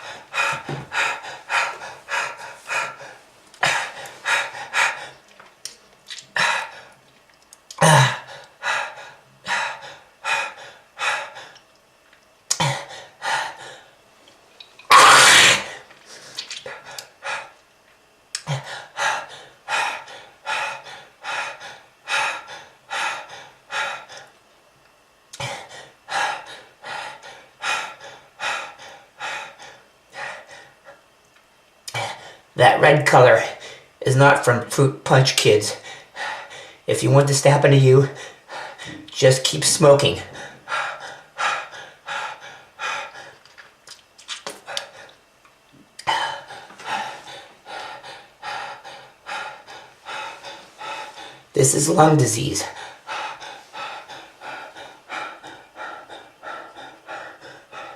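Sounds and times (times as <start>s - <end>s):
harsh hacking cough: 7.8s - 8.3s, 14.9s - 15.8s
person coughing hard: 7.8s - 8.3s, 14.9s - 15.8s.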